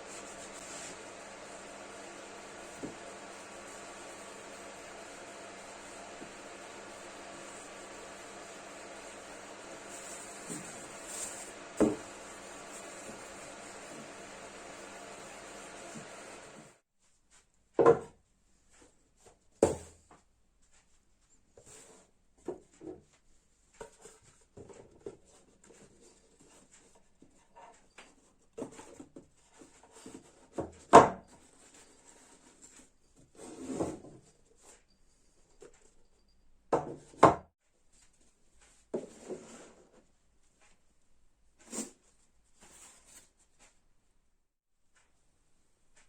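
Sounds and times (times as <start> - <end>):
wood rubbing or sliding: 0.0 - 16.7
wood knocking on hard surface: 11.8 - 12.2.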